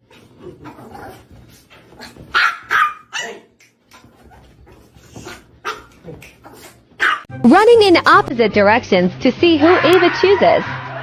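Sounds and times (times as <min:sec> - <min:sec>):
dog yipping: 0:02.0 - 0:03.5, 0:05.2 - 0:07.3
dog barking: 0:02.3 - 0:03.5, 0:05.2 - 0:07.3.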